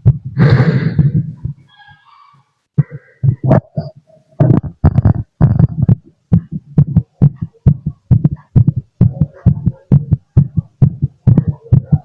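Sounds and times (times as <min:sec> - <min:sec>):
fast heartbeat through stethoscope: 0:00.0 - 0:01.7, 0:02.8 - 0:12.0.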